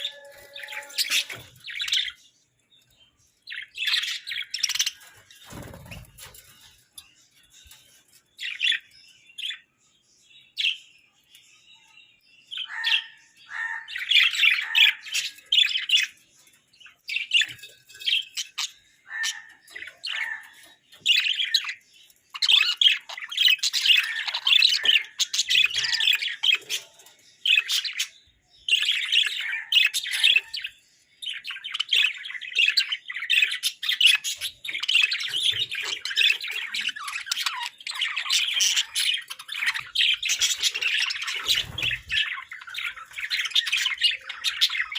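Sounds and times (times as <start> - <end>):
harsh bird squawks: 0.0 - 1.4
budgerigars chattering and warbling: 0.0 - 2.2, 3.5 - 7.0, 12.5 - 44.9.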